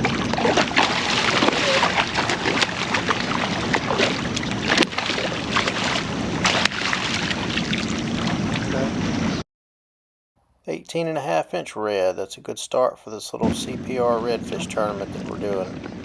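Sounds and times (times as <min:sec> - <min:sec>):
short splashes: 0:00.0 - 0:08.8
water sloshing: 0:00.0 - 0:08.8
wind buffeting microphone: 0:13.4 - 0:16.0.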